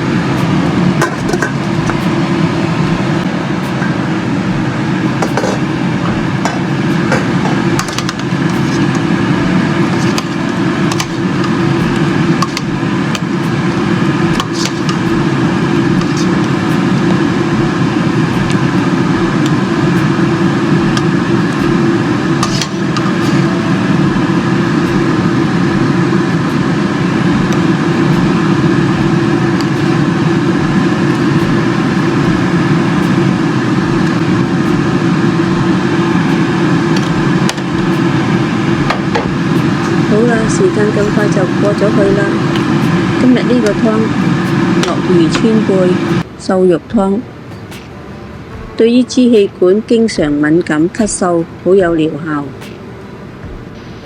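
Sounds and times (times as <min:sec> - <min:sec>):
loud mechanical hum: 0:00.0 - 0:54.0.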